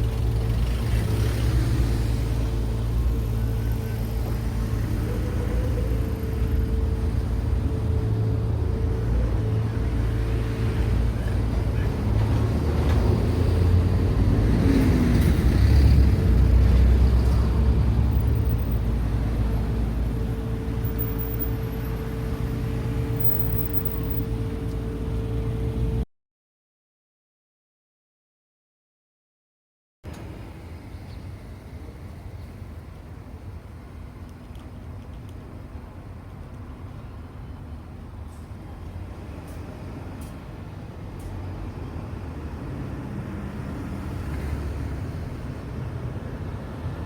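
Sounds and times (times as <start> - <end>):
vehicle engines rumbling: 0.0 - 26.0, 30.1 - 47.0
vehicle passing close by: 11.9 - 21.4.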